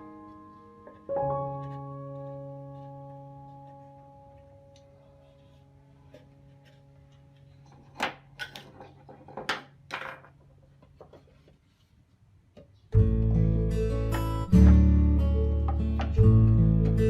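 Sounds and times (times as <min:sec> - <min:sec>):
strummed acoustic guitar music: 0:13.0 - 0:17.0.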